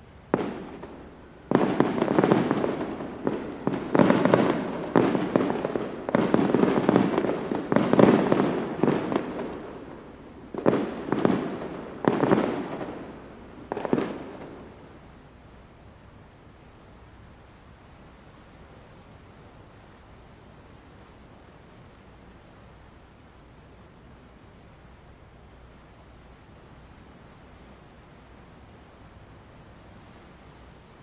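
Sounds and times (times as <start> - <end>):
fireworks booming: 0.3 - 14.8.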